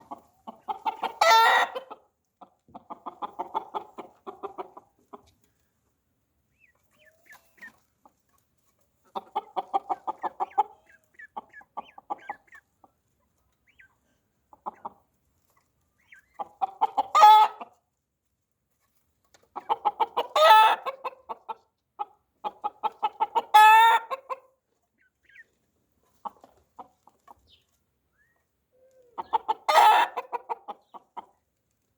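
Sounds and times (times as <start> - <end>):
chickens clucking: 0.0 - 31.9.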